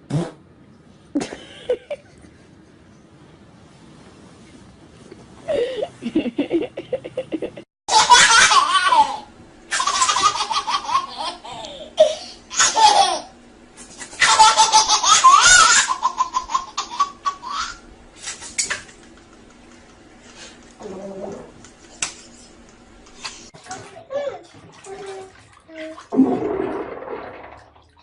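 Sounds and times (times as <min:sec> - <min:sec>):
baby laughing: 0:07.9 - 0:13.3, 0:14.1 - 0:17.8.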